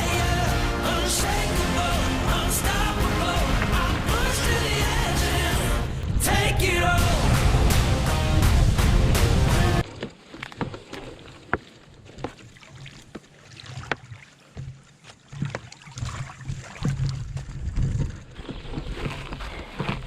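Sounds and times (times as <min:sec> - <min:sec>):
wind gusting on microphone: 0:04.9 - 0:09.8
sharp water splashes: 0:09.2 - 0:20.0
small waves lapping: 0:09.8 - 0:20.0.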